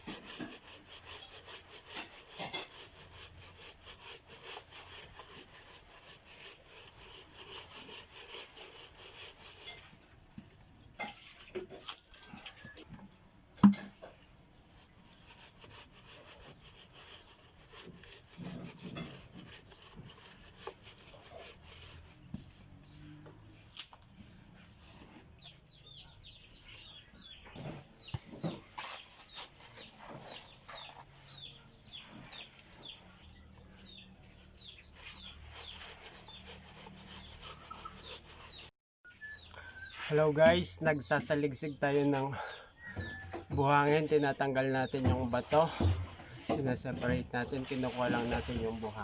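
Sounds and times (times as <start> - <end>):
sand sifting scrapes and knocks: 0.0 - 10.1, 14.7 - 23.2, 27.6 - 33.2, 44.6 - 49.0
bird chirping: 24.6 - 46.3.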